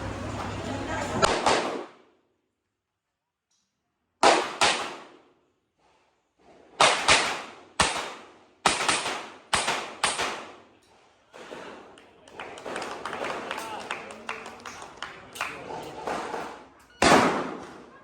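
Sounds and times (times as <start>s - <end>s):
handgun shots with echo: 1.2s - 2.0s, 4.2s - 5.2s, 6.8s - 10.6s, 17.0s - 17.9s.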